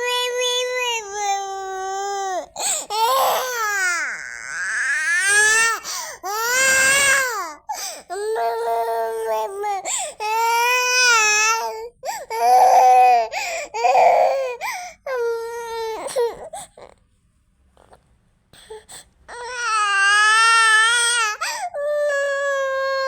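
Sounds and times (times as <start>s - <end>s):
child gasping breaths: 5.8s - 6.2s, 13.3s - 13.8s, 21.4s - 21.8s.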